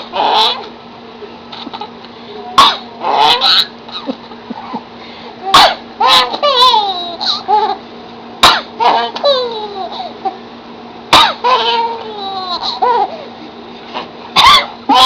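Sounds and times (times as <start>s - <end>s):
harsh coughing: 2.6s - 2.9s, 8.4s - 9.2s, 11.1s - 11.6s.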